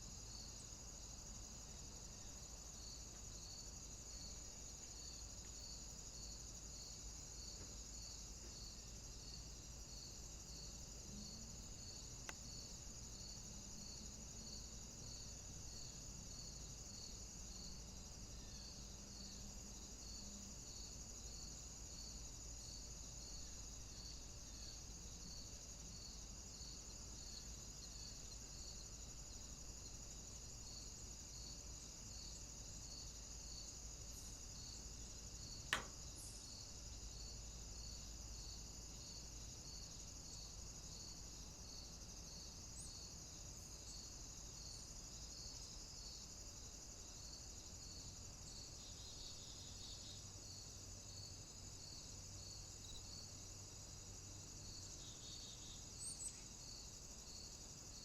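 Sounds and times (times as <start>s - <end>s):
crickets chirping: 0.0s - 58.0s
high insect hum: 0.0s - 58.0s
sharp click: 35.7s - 36.1s.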